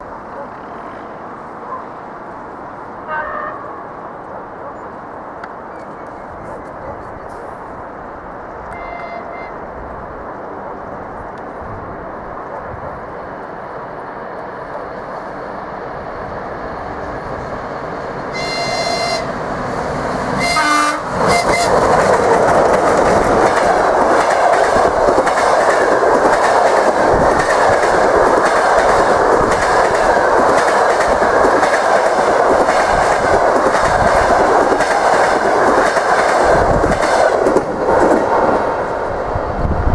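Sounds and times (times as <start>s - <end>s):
train approaching rumble: 0.0s - 39.9s
locomotive horn: 3.0s - 3.9s, 8.7s - 9.7s, 18.3s - 19.4s, 20.4s - 21.9s
wheels clacking over rail joints: 16.2s - 39.2s.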